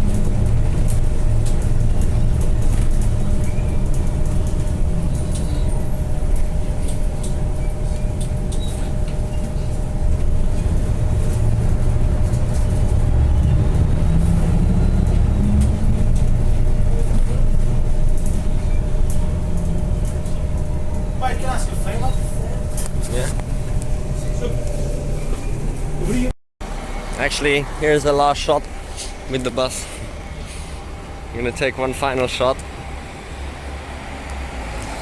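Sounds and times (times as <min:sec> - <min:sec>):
diesel bus engine rumbling: 0:00.0 - 0:35.0.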